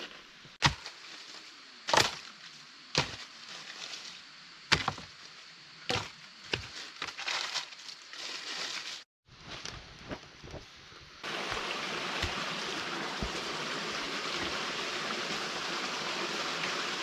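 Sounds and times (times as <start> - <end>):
rustling and scraping: 0.0 - 5.3, 5.9 - 10.8
blade chopping wood: 0.6 - 0.9, 1.9 - 2.3, 3.0 - 3.3, 4.7 - 5.1, 5.9 - 7.2, 11.3 - 14.8.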